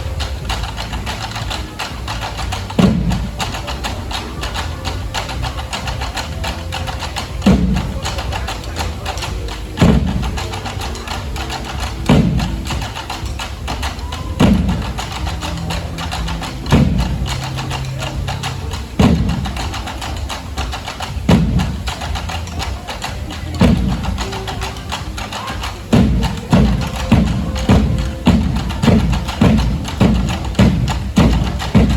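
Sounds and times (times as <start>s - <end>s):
large drum deep hits: 0.0s - 25.2s, 25.8s - 31.9s.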